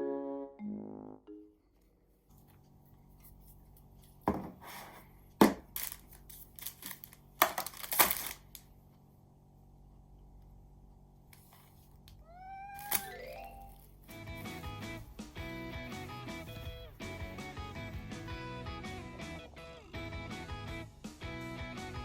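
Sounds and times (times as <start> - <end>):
packet tearing and crinkling: 5.7 - 8.7.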